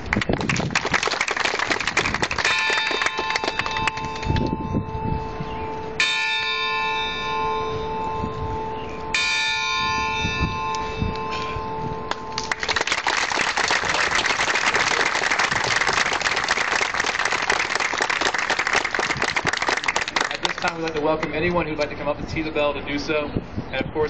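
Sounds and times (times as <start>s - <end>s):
people clapping: 0.0s - 4.5s, 12.1s - 21.4s
large tower bell ringing: 2.4s - 12.6s.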